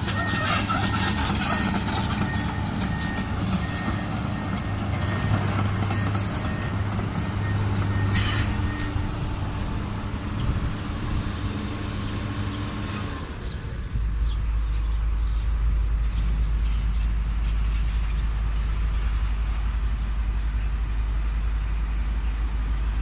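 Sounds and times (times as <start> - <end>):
heavy diesel engine running: 0.0 - 23.0
deep low rumble: 6.5 - 12.2, 13.4 - 23.0.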